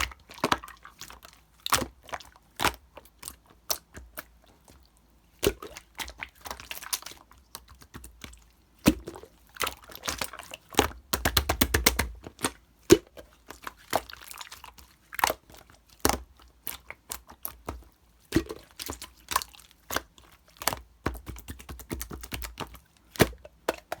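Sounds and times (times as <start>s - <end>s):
slime squished by hand popping: 11.1s - 12.2s.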